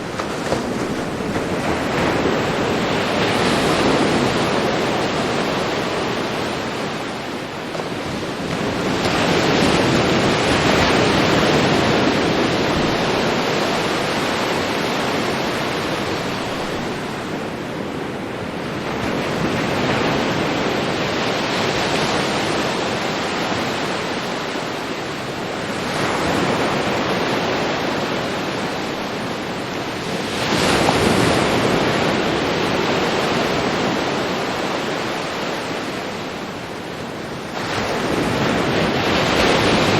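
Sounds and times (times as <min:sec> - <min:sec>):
ocean surf washing onto beach: 0:00.0 - 0:39.9.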